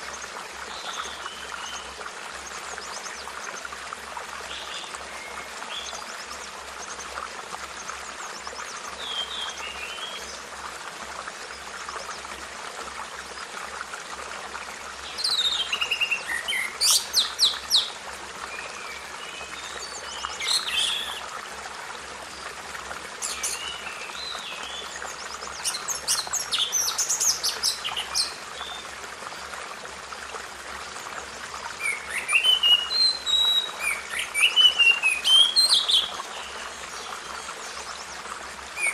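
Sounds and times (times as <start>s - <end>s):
birds singing: 15.1s - 18.0s, 18.6s - 21.2s, 23.2s - 28.8s, 31.5s - 38.9s.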